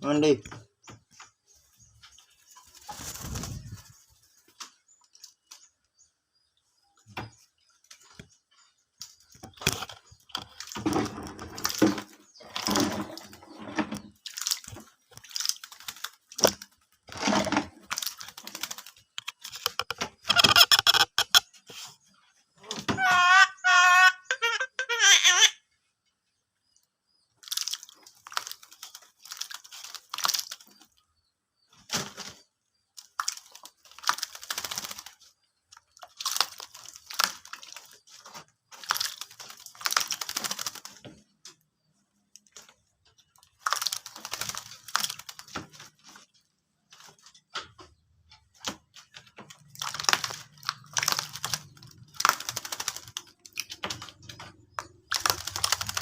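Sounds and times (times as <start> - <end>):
wings fluttering: 0.2 - 5.6, 9.0 - 23.6, 27.4 - 31.0, 31.7 - 41.4, 42.5 - 47.8, 48.5 - 56.0
bird splashing water: 9.0 - 21.5, 27.4 - 31.0, 31.8 - 46.3, 48.5 - 56.0.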